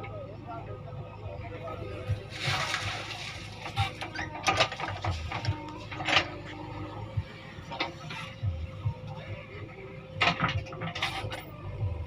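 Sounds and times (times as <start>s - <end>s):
diesel engine rumbling: 0.0s - 12.0s
metallic clanks and rattles: 2.5s - 6.5s, 10.2s - 11.5s.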